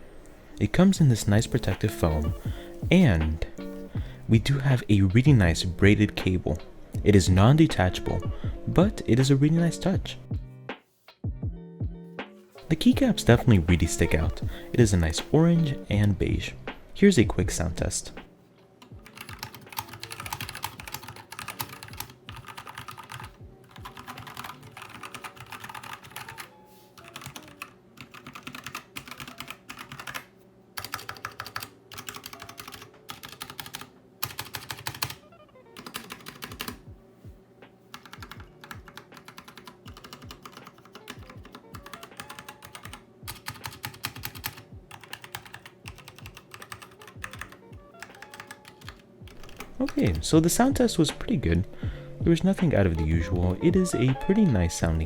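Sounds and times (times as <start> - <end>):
mechanical keyboard typing: 18.8 - 35.2, 35.8 - 36.8, 37.9 - 50.2.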